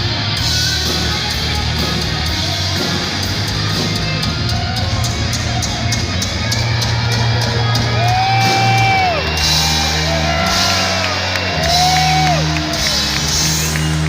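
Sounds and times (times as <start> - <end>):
heavy metal band playing live: 0.0 - 14.0
sustained bass notes: 0.0 - 14.0.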